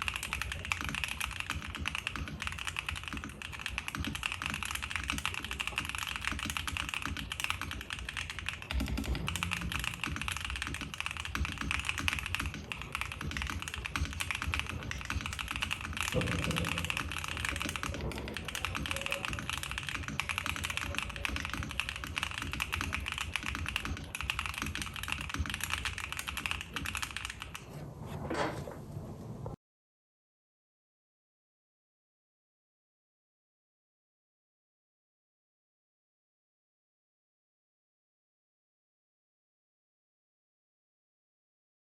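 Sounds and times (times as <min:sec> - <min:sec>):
mechanical keyboard typing: 0:00.0 - 0:27.7.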